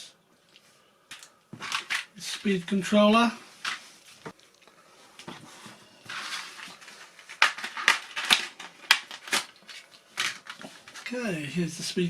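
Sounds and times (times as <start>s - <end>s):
packaging rustling: 5.2s - 11.2s
packaging crackling and clicking: 6.1s - 11.2s.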